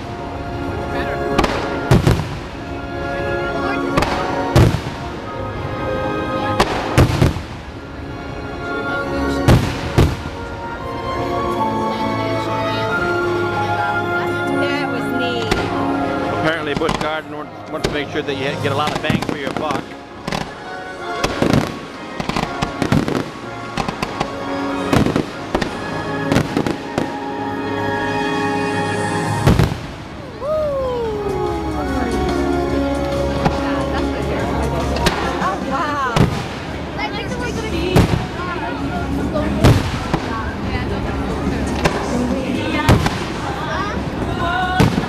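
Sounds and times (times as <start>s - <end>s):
show music: 0.0s - 45.0s
fireworks bangs and crackles: 0.6s - 2.6s, 3.9s - 5.4s, 6.5s - 8.0s, 9.4s - 10.5s, 16.6s - 27.2s, 28.9s - 30.4s, 34.5s - 45.0s.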